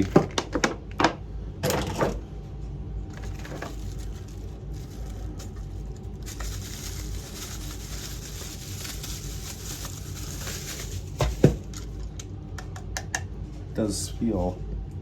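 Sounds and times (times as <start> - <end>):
packaging rustling with clicks: 3.1 - 12.2.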